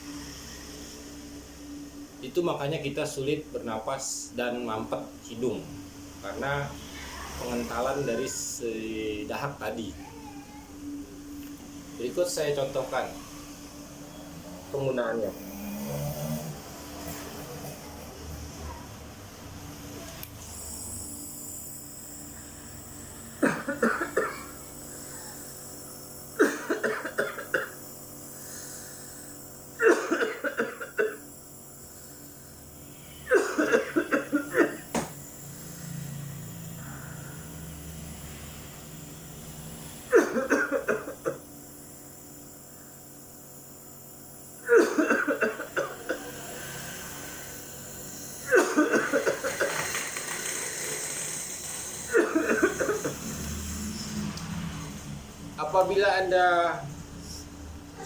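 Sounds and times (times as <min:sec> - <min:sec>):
nebulizer compressor hum: 0:00.0 - 0:58.0
person coughing: 0:23.4 - 0:25.4, 0:26.4 - 0:27.8, 0:29.8 - 0:31.2, 0:33.2 - 0:35.0, 0:40.1 - 0:41.5, 0:44.6 - 0:46.6, 0:48.3 - 0:50.0, 0:52.0 - 0:53.4.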